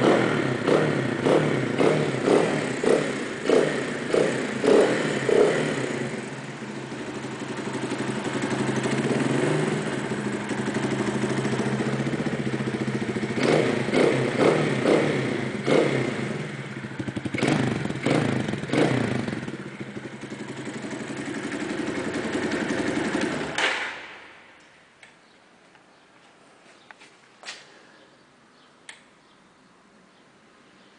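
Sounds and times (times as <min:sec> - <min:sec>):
motorcycle engine idling: 0:00.0 - 0:23.6.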